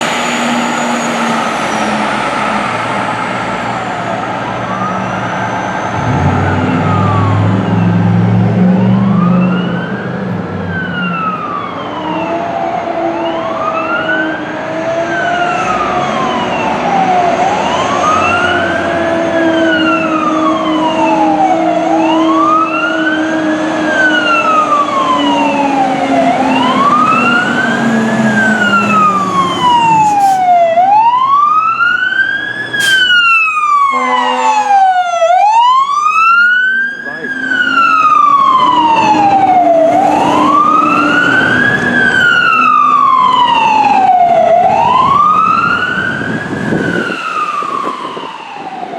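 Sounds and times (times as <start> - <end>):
fire truck siren wailing: 0.0 - 48.9
fire trucks: 0.0 - 48.9
loud deep sound: 5.8 - 9.4.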